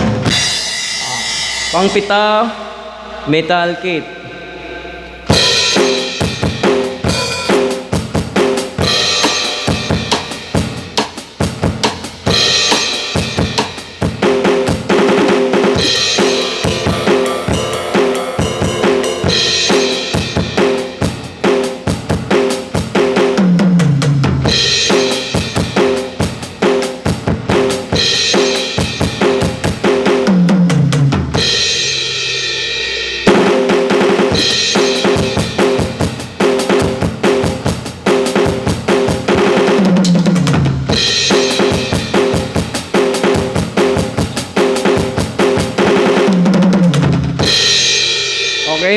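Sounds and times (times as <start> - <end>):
cymbal crashes: 0.0 - 8.2, 15.0 - 22.7, 31.4 - 36.8, 47.4 - 48.9
tom drum fills: 5.3 - 31.8, 33.3 - 48.9
kick and snare drum groove: 5.4 - 31.6, 33.3 - 48.0.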